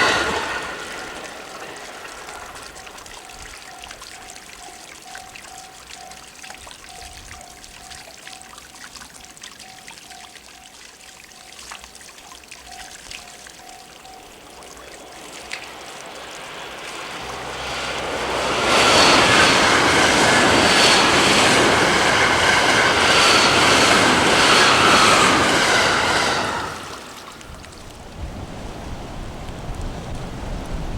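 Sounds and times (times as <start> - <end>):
wheels clacking over rail joints: 0.0 - 7.0, 13.6 - 28.1
electric train passing at speed: 0.0 - 7.5, 13.5 - 30.9
level crossing warning bell: 0.0 - 25.4
train motor whine: 15.6 - 27.6.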